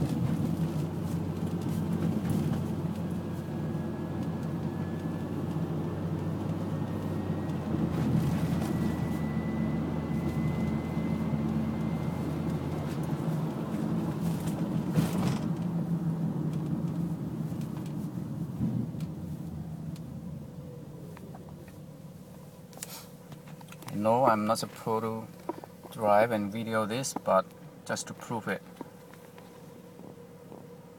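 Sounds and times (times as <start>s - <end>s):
car engine and road noise hum: 0.0s - 30.9s
faint high whine: 6.9s - 13.3s.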